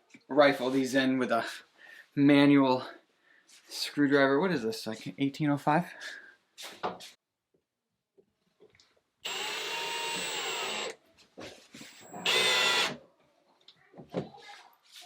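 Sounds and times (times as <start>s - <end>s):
electric screw gun whine: 9.2s - 11.0s, 11.8s - 13.0s.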